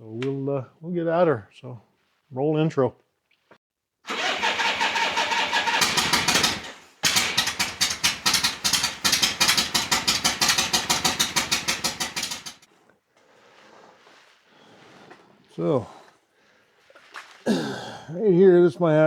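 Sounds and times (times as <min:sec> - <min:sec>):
motorcycle engine running: 0:05.5 - 0:12.7.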